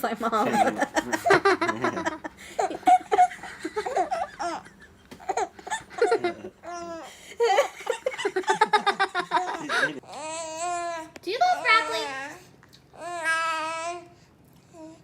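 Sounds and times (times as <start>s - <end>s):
people laughing: 0.4s - 6.6s, 7.4s - 10.0s
baby laughing: 0.4s - 10.0s.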